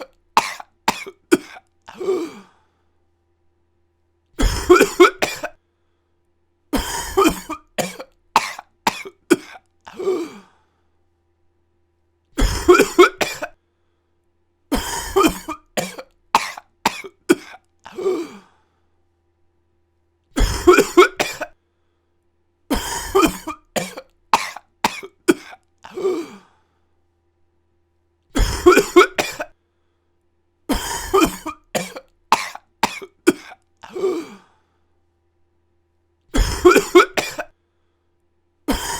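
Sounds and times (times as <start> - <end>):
person coughing: 0.0 - 2.6, 4.4 - 5.6, 6.8 - 10.5, 12.4 - 13.6, 14.7 - 18.5, 20.4 - 21.6, 22.7 - 26.5, 28.4 - 29.6, 30.7 - 34.6, 36.3 - 37.6, 38.7 - 38.9.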